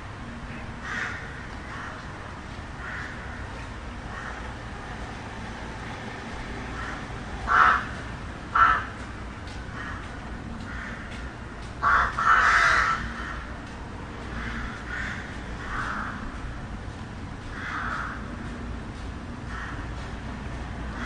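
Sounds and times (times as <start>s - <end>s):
low hum of city traffic: 0.0s - 21.0s
crows cawing: 0.5s - 2.1s, 2.7s - 4.7s, 6.7s - 9.1s, 9.7s - 13.6s, 14.2s - 16.5s, 17.5s - 18.5s, 19.4s - 20.1s.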